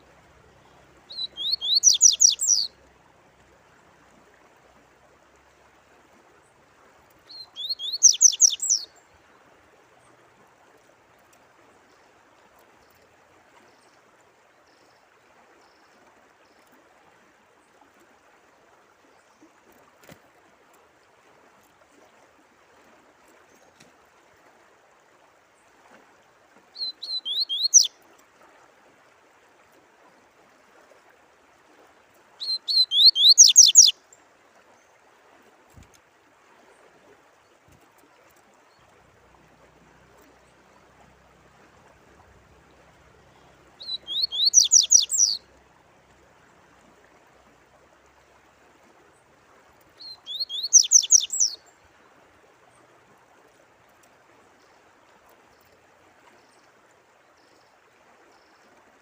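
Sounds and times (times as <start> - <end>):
songbird singing: 0.0 - 2.9, 7.2 - 9.4, 26.7 - 28.0, 32.4 - 34.2, 42.2 - 45.6, 49.2 - 51.9
faint running water: 0.0 - 59.0.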